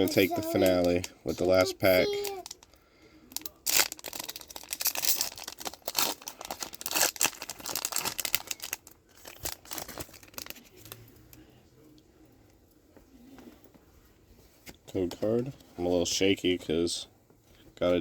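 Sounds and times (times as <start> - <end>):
foil wrapper tearing and crinkling: 3.4 - 11.0.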